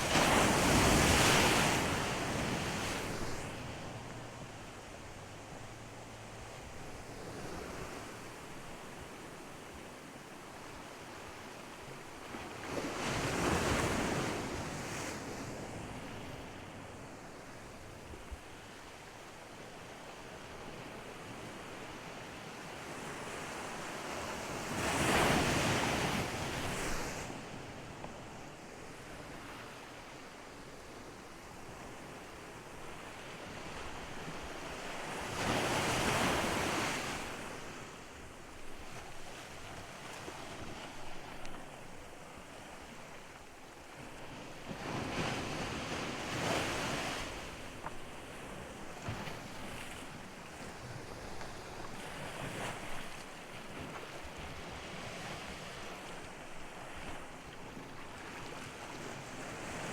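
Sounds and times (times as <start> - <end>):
steady wash of water: 0.0 - 9.6
waves breaking on shore: 0.0 - 59.9.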